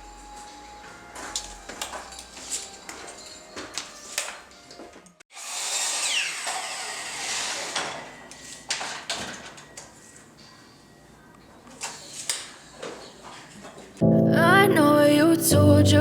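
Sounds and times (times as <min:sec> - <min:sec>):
power tool whining: 0:05.3 - 0:08.3.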